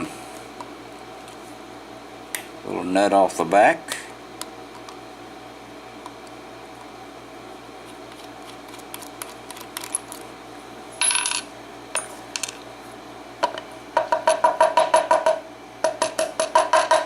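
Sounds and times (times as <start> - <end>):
lock parts clinking: 8.7 - 10.3.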